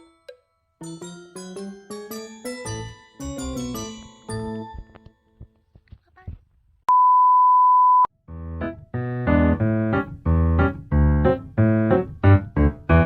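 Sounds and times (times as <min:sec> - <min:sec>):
electric piano tune: 0:08.3 - 0:13.0.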